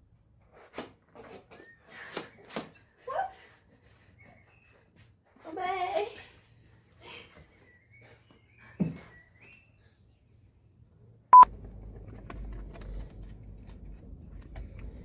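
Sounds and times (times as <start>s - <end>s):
steady low rumble: 11.4s - 15.0s.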